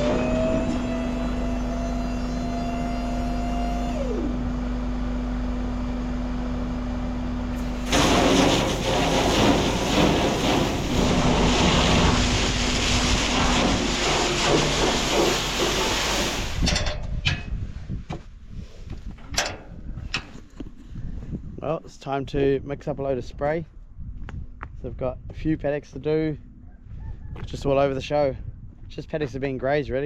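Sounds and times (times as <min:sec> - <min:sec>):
high whine: 0:00.0 - 0:17.0
rough rushing noise: 0:07.6 - 0:17.0.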